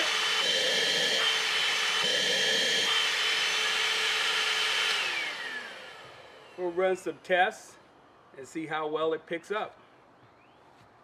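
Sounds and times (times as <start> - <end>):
handheld vacuum whining: 0.0 - 7.0
vacuum motor winding down: 0.0 - 7.0.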